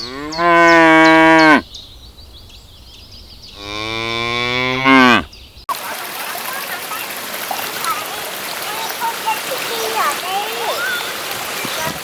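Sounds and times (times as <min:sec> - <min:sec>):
cow mooing: 0:00.0 - 0:01.6, 0:03.6 - 0:05.3.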